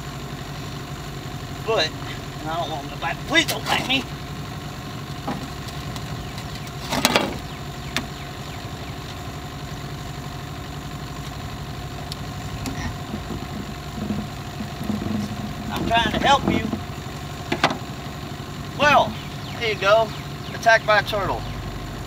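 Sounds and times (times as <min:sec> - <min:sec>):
engine idling: 0:00.0 - 0:22.0
short clatter: 0:12.6 - 0:17.8.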